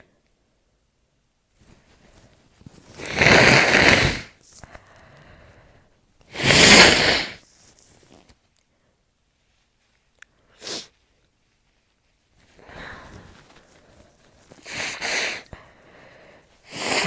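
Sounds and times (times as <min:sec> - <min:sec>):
person blowing nose: 0:02.9 - 0:04.4, 0:06.3 - 0:07.4, 0:10.6 - 0:11.0, 0:14.5 - 0:17.0.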